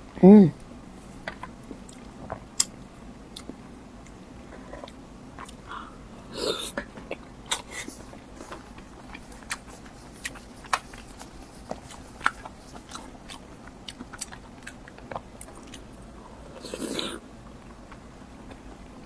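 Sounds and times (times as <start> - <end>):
chewing and mouth smacks: 1.2 - 5.7, 6.6 - 17.2.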